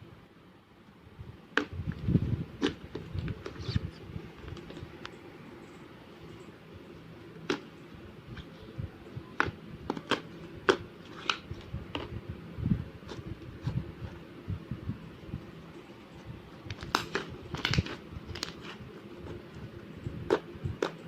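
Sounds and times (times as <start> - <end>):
slime squishing: 1.5 - 5.0, 9.4 - 12.2, 13.0 - 14.2, 16.5 - 21.0.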